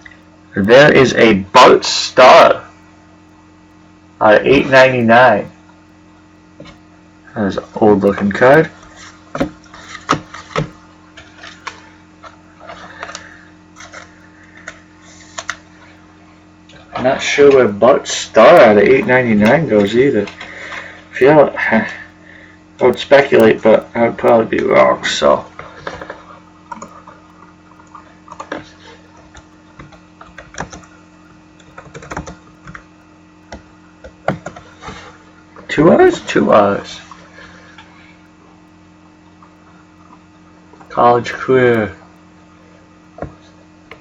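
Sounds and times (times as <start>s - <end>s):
steady low hum: 0.0s - 44.0s
computer keyboard typing: 29.2s - 31.0s, 31.6s - 32.9s, 33.5s - 34.7s.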